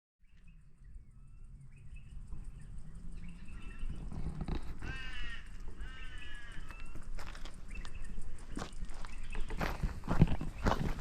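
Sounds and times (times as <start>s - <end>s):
faint bird chirps: 0.2s - 11.0s
low outdoor rumble: 0.3s - 11.0s
crow cawing: 4.7s - 7.1s.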